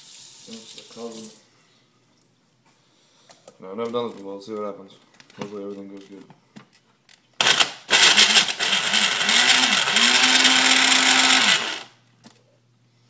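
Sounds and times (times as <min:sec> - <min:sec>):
blender motor running: 0:07.4 - 0:12.0.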